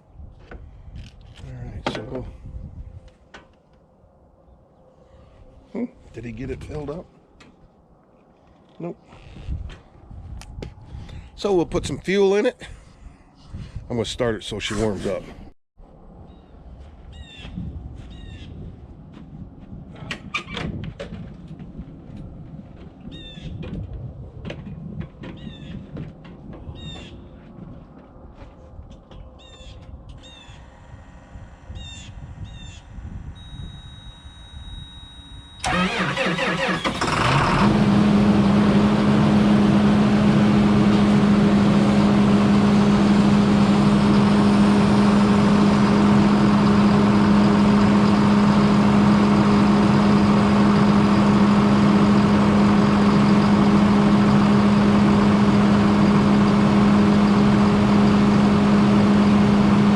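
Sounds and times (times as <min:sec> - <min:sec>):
steady high warning tone: 0:33.1 - 0:35.7
tractor engine idling: 0:33.5 - 0:59.9
tractor starter cranking: 0:34.5 - 0:38.8.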